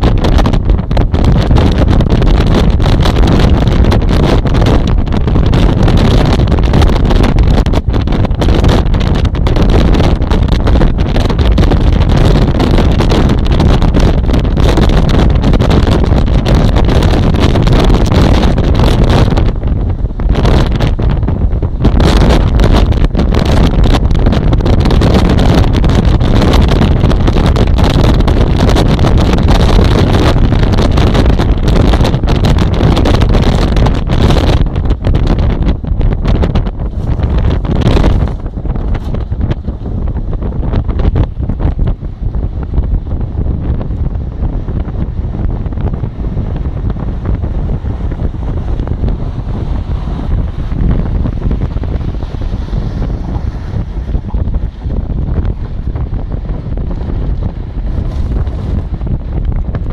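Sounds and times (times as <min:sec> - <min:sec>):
car road rumble: 0:00.0 - 0:59.9
wind buffeting microphone: 0:00.0 - 0:59.9.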